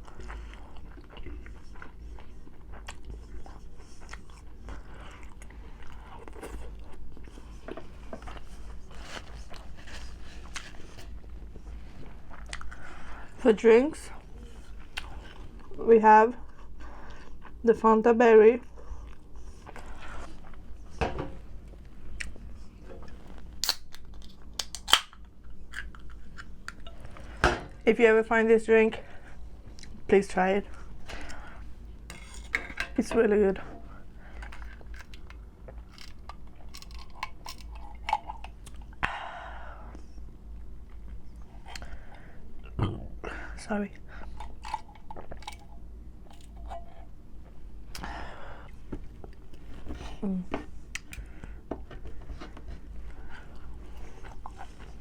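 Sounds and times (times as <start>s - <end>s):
eating sounds: 0.0s - 7.5s, 44.0s - 47.1s
chewing: 0.0s - 11.0s, 12.3s - 13.1s
faint low hum: 0.0s - 55.0s
loud snaps: 23.6s - 24.0s.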